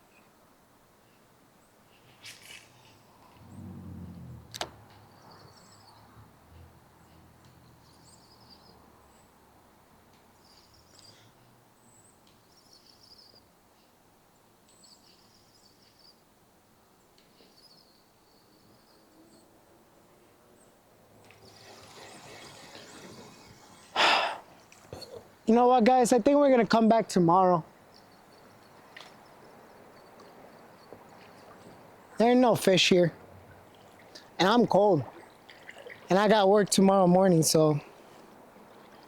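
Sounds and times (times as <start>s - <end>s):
brief low rumble: 3.3s - 5.4s.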